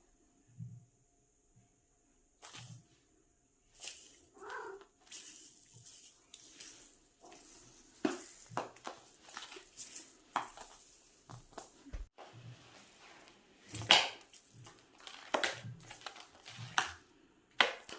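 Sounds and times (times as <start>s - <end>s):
cat chirp: 4.4s - 4.9s.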